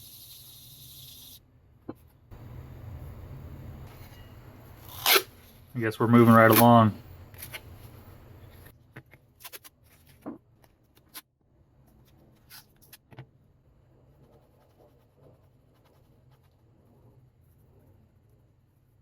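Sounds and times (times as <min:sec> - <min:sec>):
faint room hum: 0:00.0 - 0:19.0.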